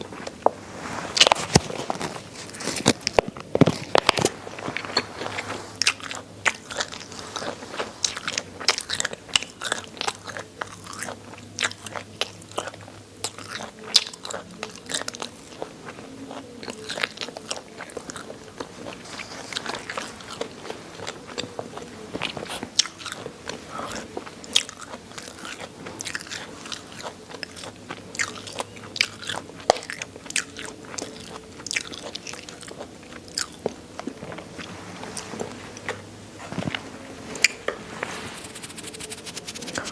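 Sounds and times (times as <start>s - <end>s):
chewing crunchy bones: 0.0s - 37.7s
mouth sounds: 38.3s - 39.9s.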